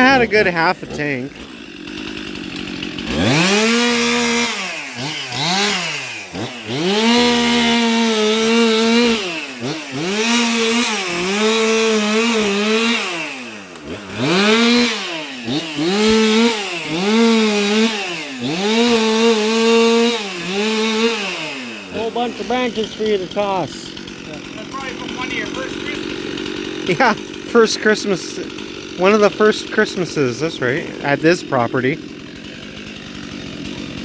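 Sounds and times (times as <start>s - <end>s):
chainsaw revving: 0.0s - 34.0s.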